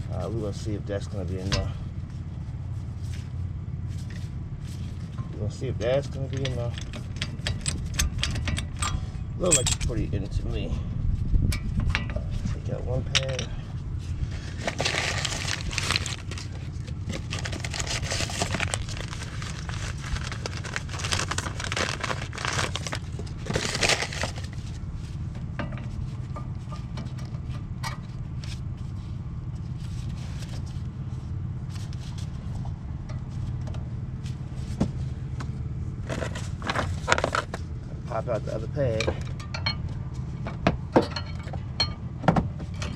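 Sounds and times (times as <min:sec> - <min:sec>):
steady low hum: 0:00.0 - 0:42.9
metal scraping and clicking: 0:06.3 - 0:09.9.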